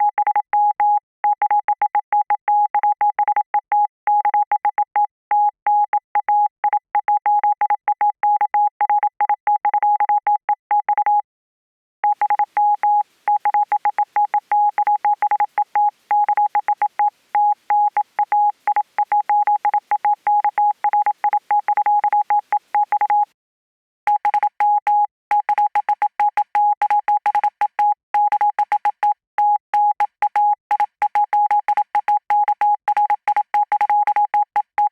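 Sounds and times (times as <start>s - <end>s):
morse code beeps: 12.0s - 23.4s, 24.1s - 34.9s.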